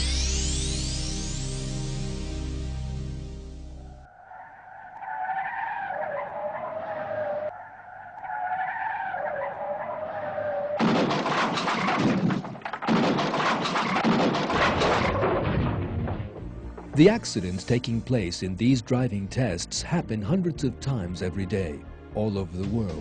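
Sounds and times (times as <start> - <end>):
car tyres squealing: 3.8 - 12.0
harsh skidding noise: 3.8 - 12.0.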